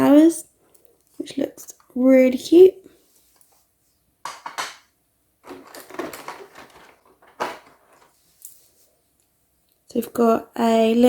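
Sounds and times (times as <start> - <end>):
plastic furniture pieces clicking: 5.4 - 8.1.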